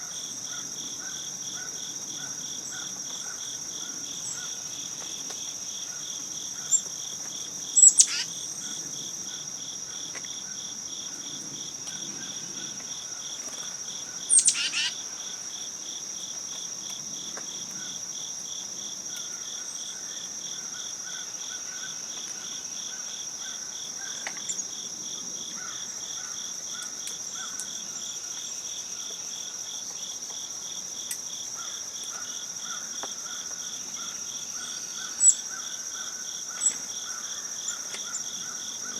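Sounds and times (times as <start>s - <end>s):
crickets and insects trilling: 0.0s - 38.9s
sharp loud bird calls: 7.8s - 8.3s, 14.3s - 15.0s.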